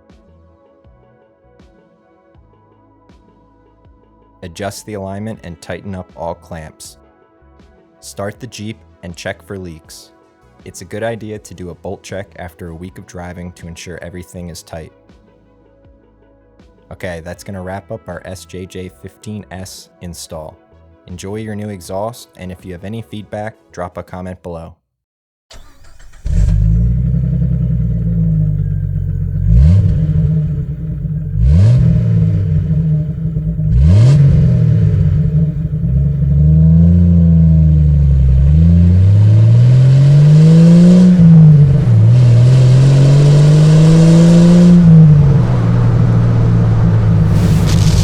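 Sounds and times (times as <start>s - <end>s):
car exhaust idling and revving: 26.2s - 48.0s.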